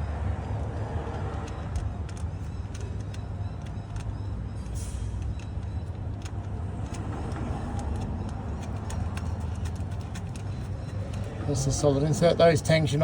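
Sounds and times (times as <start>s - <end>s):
small metallic clicks and taps: 1.1s - 4.3s.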